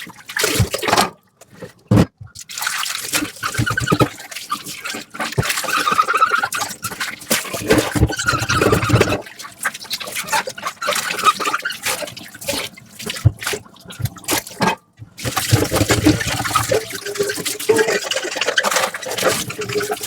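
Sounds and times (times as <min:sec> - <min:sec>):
water running over dishes: 0:02.4 - 0:20.0.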